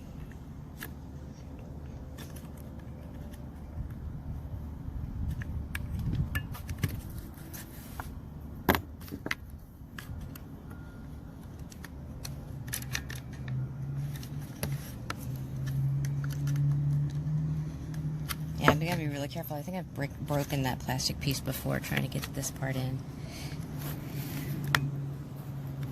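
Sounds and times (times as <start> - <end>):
low steady hum: 0.0 - 25.9
small parts clicking and rattling: 11.4 - 18.5.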